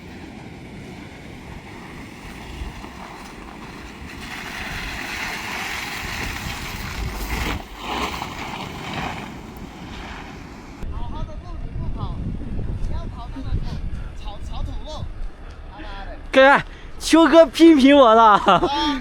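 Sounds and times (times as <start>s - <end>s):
tyres rushing through water and mud: 0.0s - 10.8s
vehicle low rumble: 0.0s - 19.0s.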